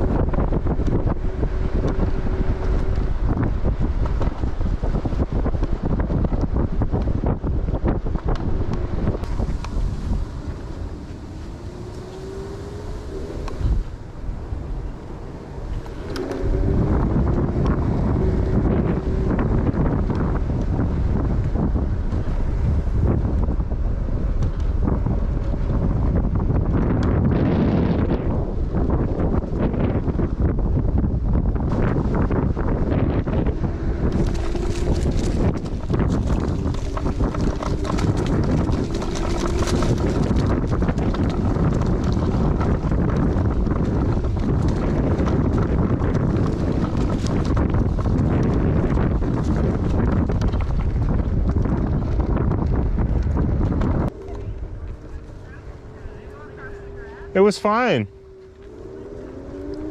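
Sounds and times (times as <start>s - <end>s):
wind buffeting microphone: 0.0s - 59.9s
clicks and knocks from scooter: 34.1s - 55.4s.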